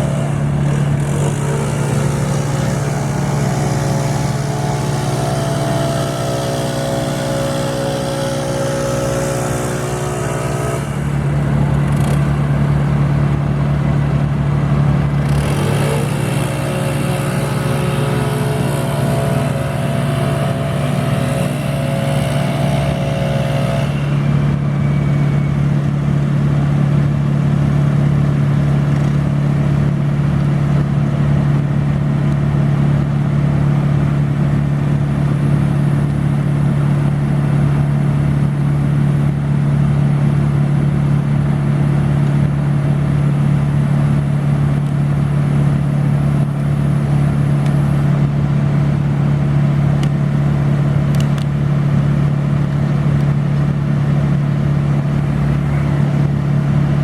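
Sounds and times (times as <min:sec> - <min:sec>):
high-pitched machine whine: 0:00.0 - 0:12.8, 0:15.2 - 0:26.7
heavy engine-driven equipment: 0:00.0 - 0:57.0.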